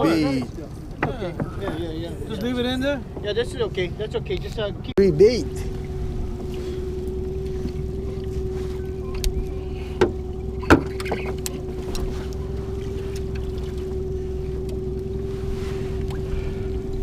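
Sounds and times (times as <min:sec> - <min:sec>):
boat motor humming: 0:00.0 - 0:17.0
sharp knocks on boat: 0:00.4 - 0:02.2, 0:09.2 - 0:13.9.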